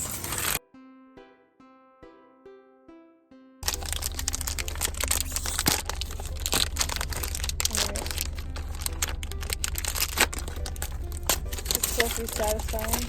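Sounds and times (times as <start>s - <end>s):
plastic toys clicking: 0.0s - 0.6s, 3.6s - 13.0s
plastic wrappers crinkling: 0.0s - 0.6s, 3.6s - 13.0s
steady low hum: 3.6s - 13.0s.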